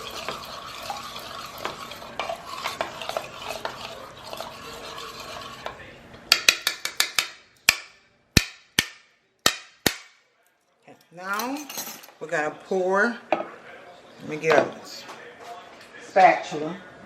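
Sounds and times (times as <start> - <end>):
stirring liquid in a bowl: 0.0 - 7.2
utensil clinking on bowl: 0.0 - 7.3.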